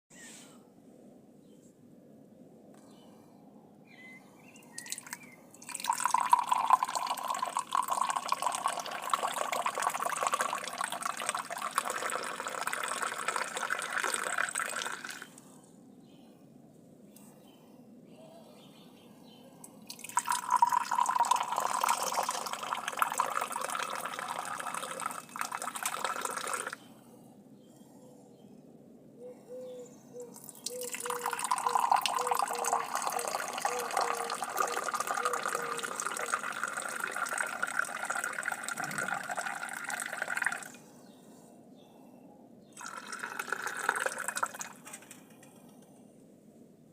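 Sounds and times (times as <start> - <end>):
tea pouring into a glass: 4.8 - 15.3, 19.9 - 26.8, 30.4 - 40.8, 42.8 - 44.9.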